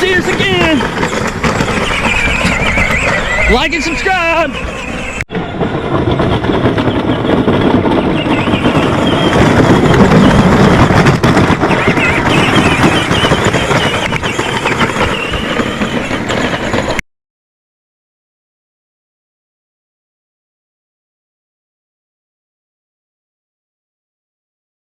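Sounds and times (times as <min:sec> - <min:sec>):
ride-on toy rattling rumble: 0:00.0 - 0:17.0.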